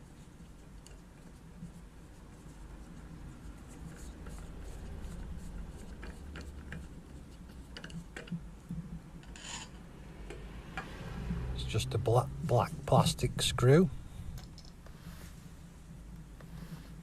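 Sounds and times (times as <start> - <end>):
screw scratching and clicking: 3.8 - 8.4, 9.2 - 9.8
low hum: 8.4 - 17.0.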